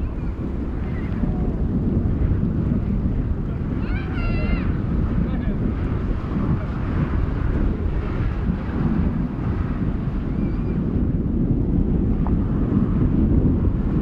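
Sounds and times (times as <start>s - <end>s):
wind buffeting microphone: 0.0s - 14.0s.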